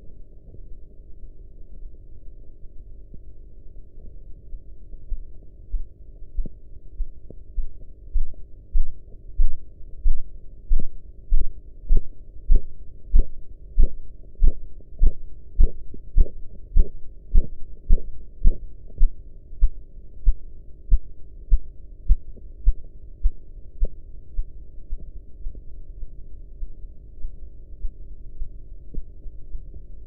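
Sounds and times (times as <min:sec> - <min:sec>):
pulse thumps through stethoscope: 0:07.6 - 0:24.0.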